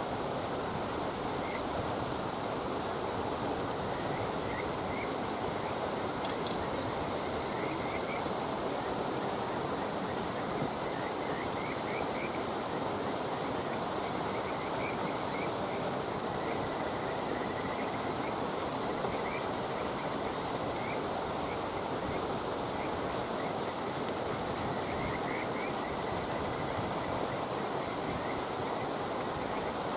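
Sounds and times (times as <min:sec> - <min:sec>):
running water: 0:00.0 - 0:29.9
campfire crackling: 0:02.2 - 0:12.9
frogs chirping: 0:03.9 - 0:08.3, 0:13.7 - 0:23.9, 0:24.5 - 0:29.8.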